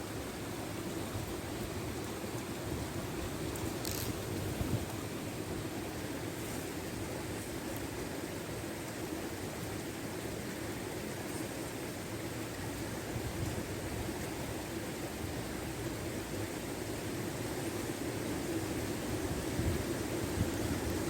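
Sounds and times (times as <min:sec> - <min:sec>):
river rushing: 0:00.0 - 0:21.0.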